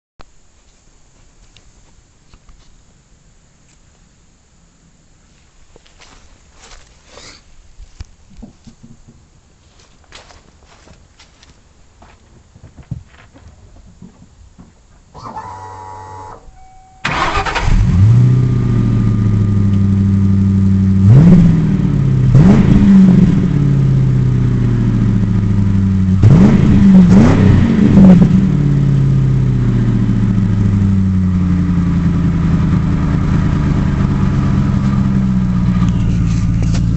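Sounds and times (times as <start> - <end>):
car engine starting and idling: 15.1 - 36.9
engine throttle blips: 15.2 - 36.9.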